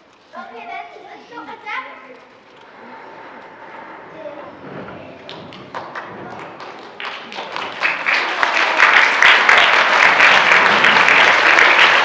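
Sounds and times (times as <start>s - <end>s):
audience applause: 5.2s - 12.0s.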